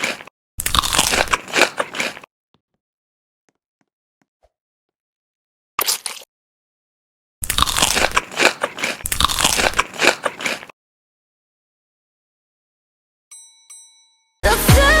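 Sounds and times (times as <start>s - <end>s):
crunching and chewing crisp food: 0.0s - 2.3s, 5.8s - 6.3s, 7.4s - 10.8s.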